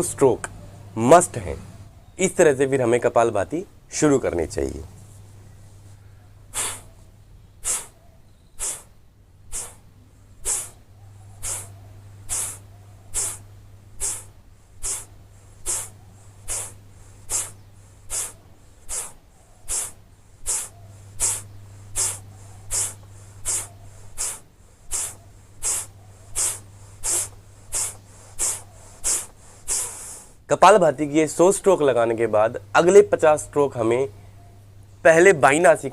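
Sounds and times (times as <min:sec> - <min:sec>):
forceful nasal exhalations: 0:06.5 - 0:07.0, 0:07.6 - 0:30.5.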